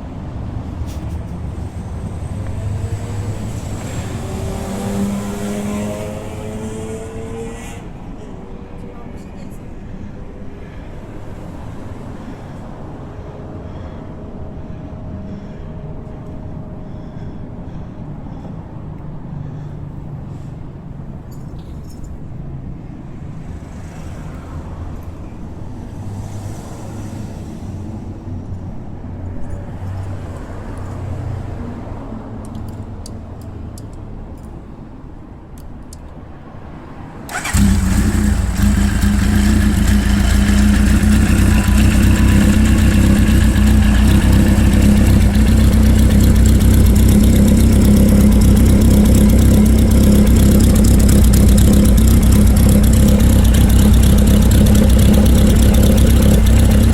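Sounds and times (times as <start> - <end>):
engine starting and idling: 37.3 - 56.9
low rumble: 37.6 - 56.9.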